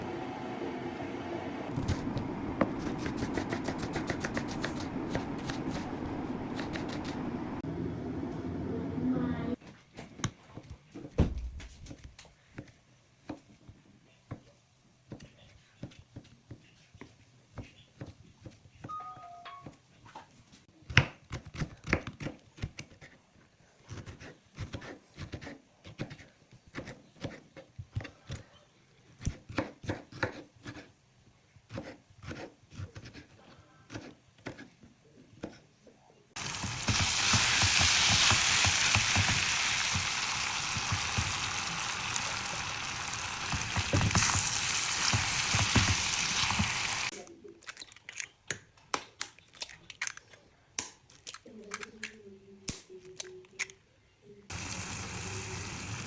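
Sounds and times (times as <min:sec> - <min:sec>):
food sizzling in frying pan: 0:36.4 - 0:47.1, 0:54.5 - 0:56.0.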